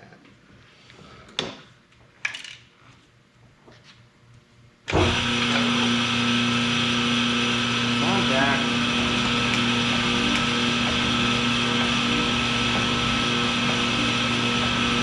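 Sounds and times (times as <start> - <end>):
cylinder honing machine running: 4.9 - 15.0.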